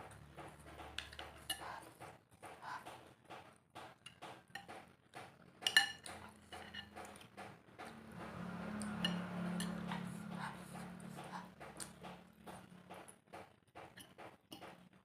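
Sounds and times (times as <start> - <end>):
cutlery tapping in a bowl: 3.9 - 4.8, 5.6 - 7.4.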